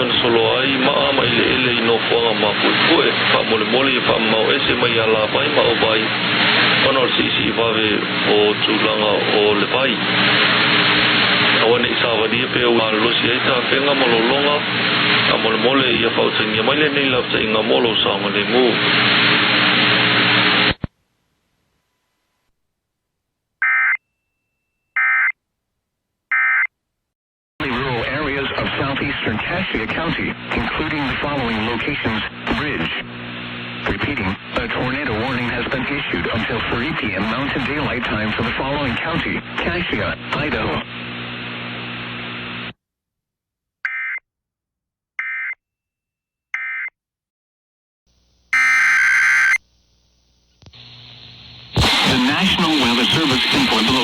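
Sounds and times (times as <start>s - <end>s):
broadcast audio: 0.0s - 21.0s, 27.6s - 42.7s, 50.3s - 54.0s
electronic buzzing chirps: 48.5s - 52.3s
loud electronic tone: 48.6s - 49.6s, 51.8s - 54.0s.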